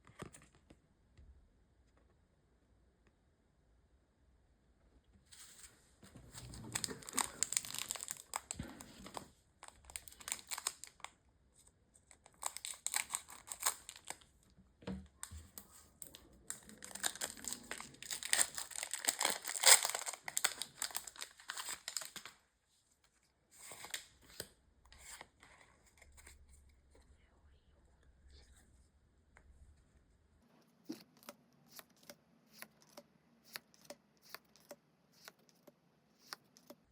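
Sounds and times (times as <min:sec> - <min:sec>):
foil wrappers crinkling and tearing: 0:06.3 - 0:11.1, 0:12.1 - 0:14.3, 0:15.6 - 0:22.4.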